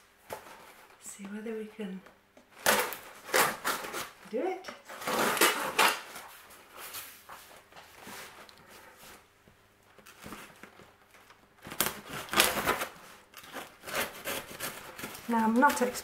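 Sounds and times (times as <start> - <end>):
packaging rustling and scraping: 0.2 - 1.0, 2.5 - 9.3, 9.9 - 16.0
packaging tearing and crackling: 2.5 - 4.2, 4.9 - 6.3, 10.0 - 16.0.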